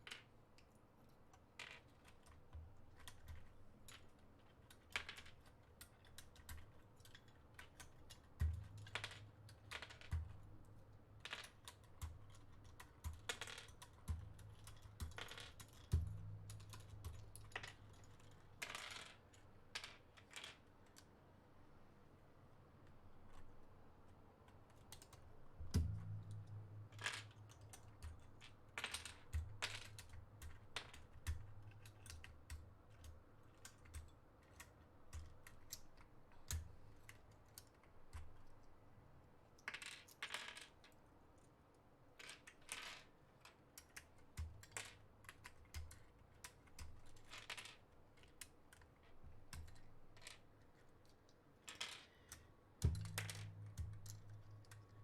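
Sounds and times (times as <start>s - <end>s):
keycaps clicking and clattering: 0.0s - 21.1s, 24.5s - 38.8s, 42.3s - 55.0s.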